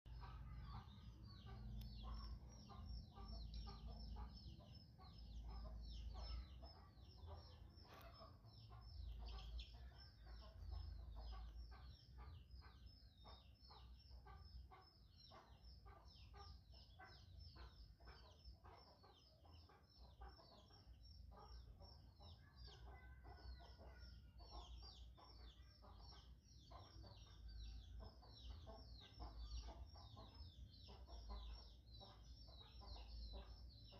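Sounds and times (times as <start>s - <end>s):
rapid bird chirps: 0.1s - 33.9s.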